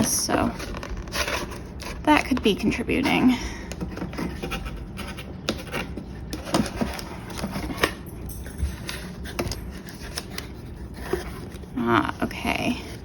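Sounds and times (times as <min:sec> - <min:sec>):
cardboard packaging handled: 0:00.0 - 0:11.9.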